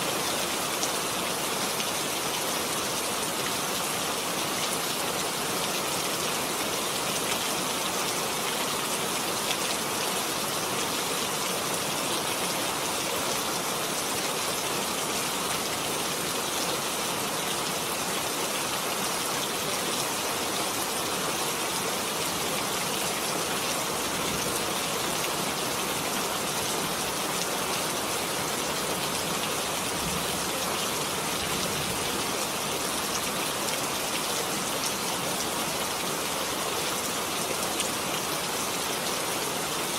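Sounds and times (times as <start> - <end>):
heavy rain falling: 0.0 - 39.9.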